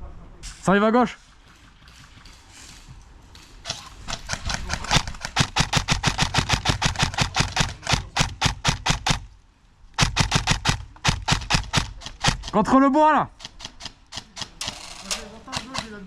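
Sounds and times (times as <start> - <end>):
airsoft gun rapid firing: 3.6 - 9.3, 10.0 - 12.6, 13.4 - 16.0.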